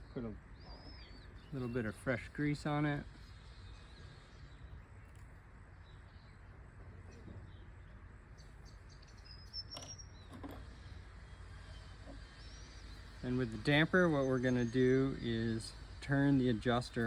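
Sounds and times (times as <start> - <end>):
faint background hum: 0.0 - 17.0
high bird chirps: 8.4 - 15.2.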